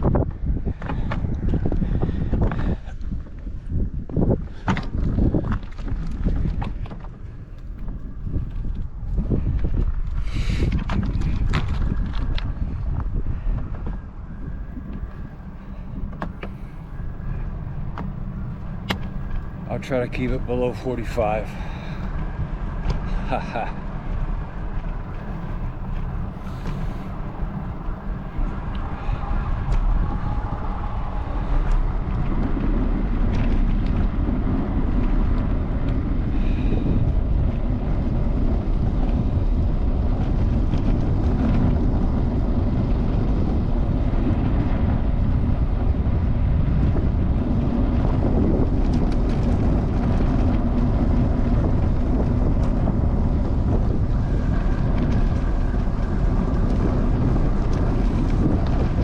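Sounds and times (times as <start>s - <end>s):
road noise: 0.0s - 59.0s
wind buffeting microphone: 0.0s - 59.0s.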